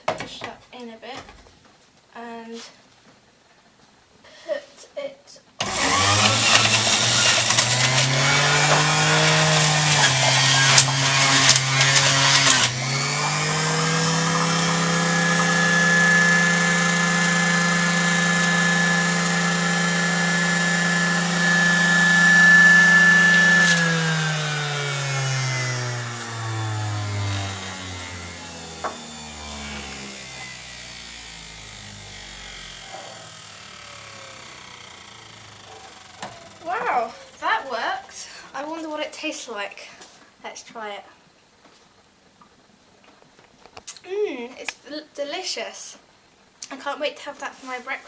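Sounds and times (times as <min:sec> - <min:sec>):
juicer motor running: 0:05.6 - 0:38.4
fruit crunching and grinding: 0:05.6 - 0:38.5.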